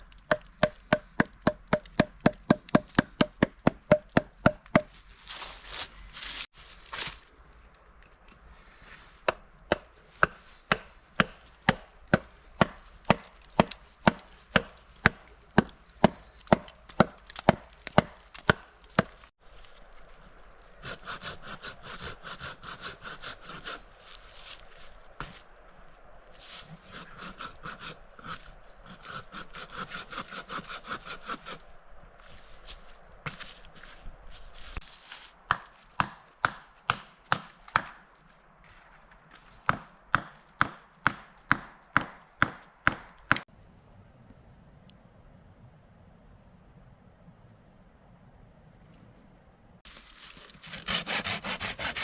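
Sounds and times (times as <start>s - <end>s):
tool striking wood: 0.2s - 4.9s, 9.3s - 19.1s
rasping scrape: 20.8s - 25.4s, 26.4s - 31.7s, 49.9s - 52.0s.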